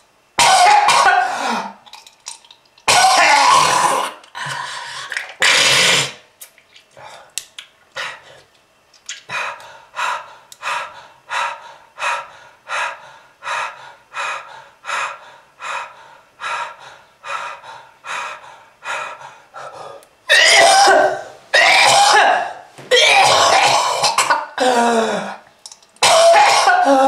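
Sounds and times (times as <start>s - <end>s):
rough hacking cough: 0.4s - 1.7s, 20.3s - 24.7s, 26.0s - 27.0s
person gasping: 1.2s - 1.8s, 4.3s - 5.2s, 9.3s - 20.0s, 24.6s - 25.5s.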